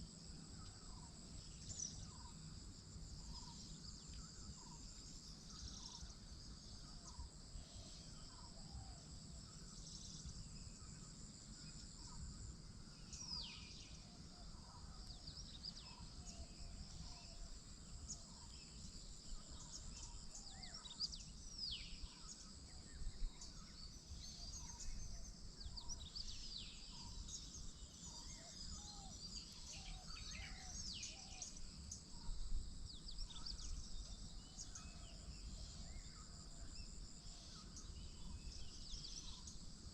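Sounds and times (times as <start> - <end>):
high insect drone: 0.0 - 39.9.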